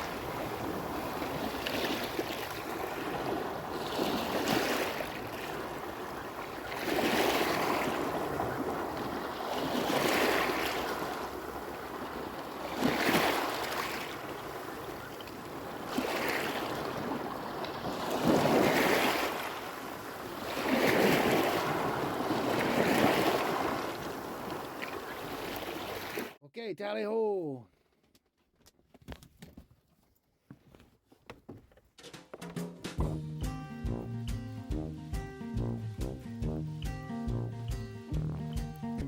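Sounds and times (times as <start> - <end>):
small waves washing onto beach: 0.0 - 26.4.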